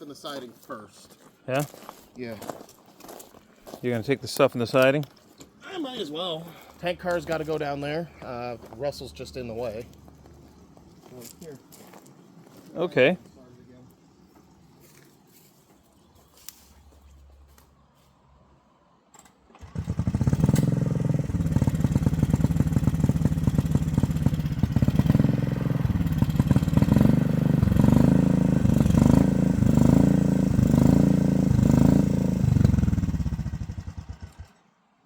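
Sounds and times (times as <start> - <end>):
small gasoline engine running: 19.6 - 34.6.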